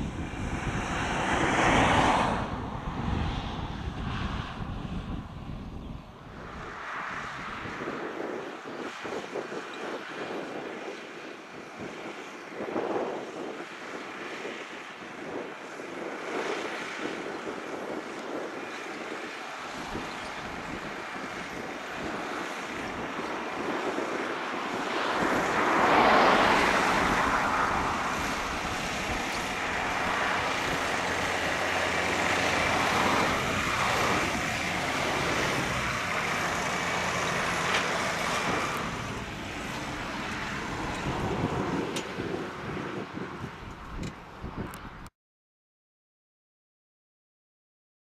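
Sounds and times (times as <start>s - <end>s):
road traffic passing: 0.0s - 45.0s
tractor engine running: 18.0s - 42.8s.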